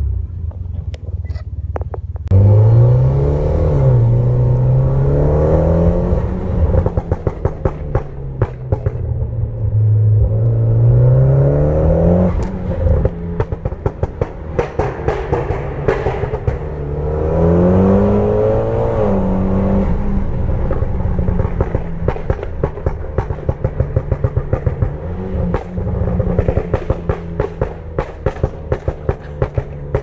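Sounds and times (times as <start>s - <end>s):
exhaust pops and crackles: 0.4s - 2.4s, 5.8s - 10.6s, 12.2s - 17.0s, 19.9s - 30.0s
car engine revving: 1.7s - 30.0s.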